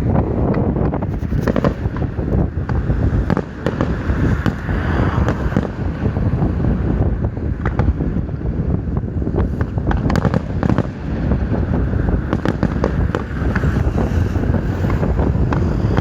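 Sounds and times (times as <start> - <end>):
firework shells bursting: 0.8 - 4.6.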